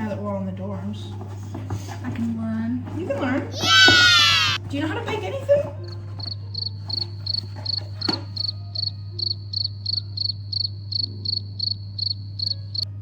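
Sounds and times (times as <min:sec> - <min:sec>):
cricket chirping: 0:05.8 - 0:13.0.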